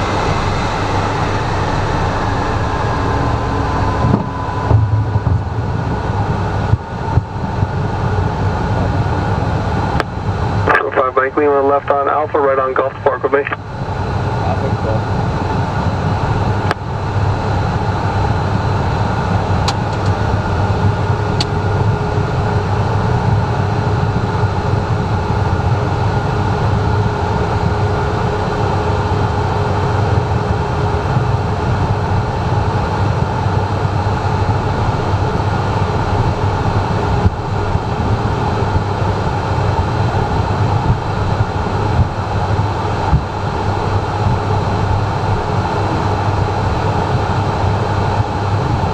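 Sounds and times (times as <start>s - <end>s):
faint whining tones: 0.0s - 8.9s
jet engines idling rumble: 0.0s - 48.9s.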